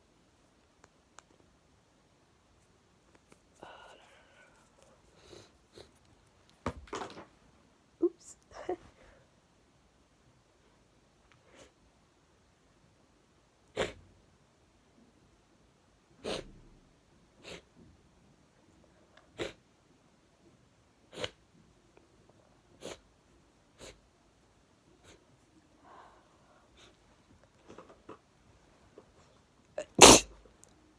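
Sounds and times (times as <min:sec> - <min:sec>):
person sneezing: 0:29.8 - 0:30.3.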